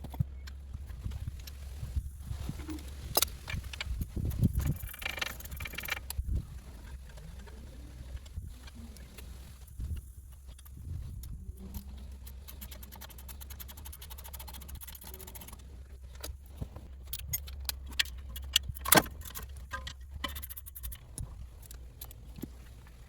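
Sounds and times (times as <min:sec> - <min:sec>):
steady low hum: 0:00.0 - 0:23.0
metal hand tools clicking: 0:03.1 - 0:06.2, 0:11.7 - 0:16.4, 0:17.0 - 0:22.2.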